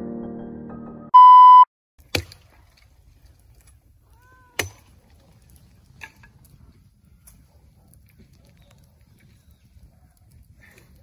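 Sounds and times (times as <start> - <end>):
piano music: 0.0 - 1.1
loud electronic beep: 1.2 - 1.7.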